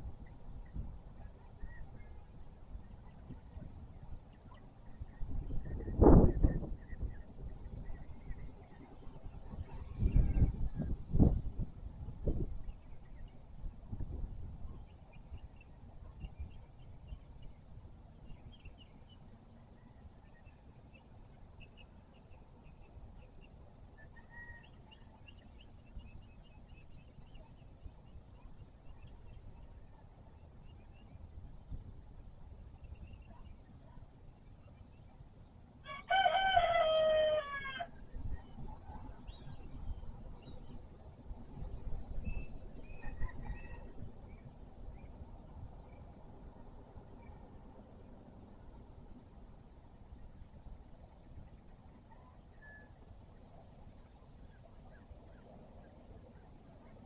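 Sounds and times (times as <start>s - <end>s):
high insect drone: 0.0s - 57.0s
faint bird chirps: 18.2s - 30.0s, 52.0s - 53.0s
rooster crowing: 35.8s - 38.0s, 42.9s - 44.0s.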